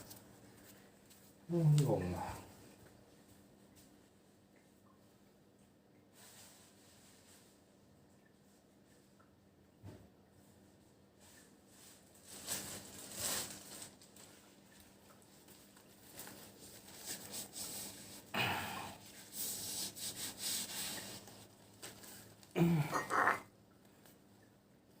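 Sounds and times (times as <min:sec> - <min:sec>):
rustling and rubbing: 0:10.5 - 0:18.3, 0:19.0 - 0:22.5.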